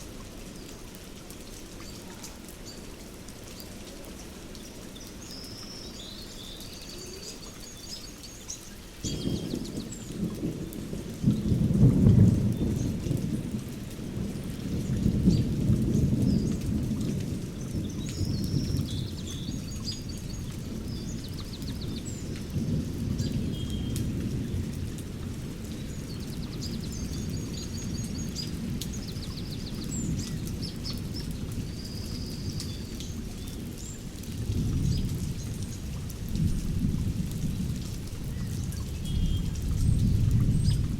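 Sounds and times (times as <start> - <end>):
rain falling: 0.0 - 40.9
birds singing: 3.5 - 11.6, 12.4 - 13.2, 14.4 - 24.8, 25.6 - 34.0, 38.3 - 40.9
thunder rumbling: 9.0 - 32.6, 34.4 - 40.9.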